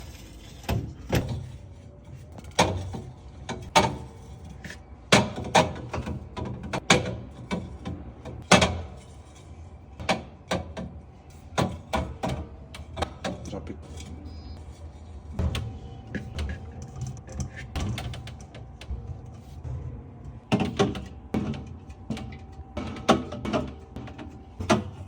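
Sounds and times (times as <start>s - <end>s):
fridge door opening and closing: 15.3s - 19.1s.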